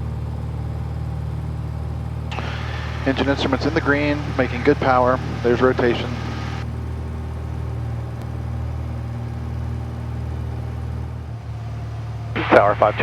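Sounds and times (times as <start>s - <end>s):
propeller plane engine drone: 0.0s - 13.0s.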